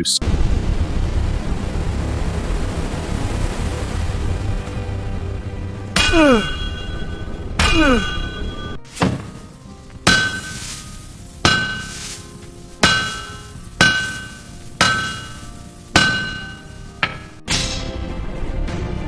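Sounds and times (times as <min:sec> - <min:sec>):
hammer ringing on anvil: 0:06.0 - 0:09.4, 0:10.1 - 0:10.8, 0:11.5 - 0:12.2, 0:12.8 - 0:17.4.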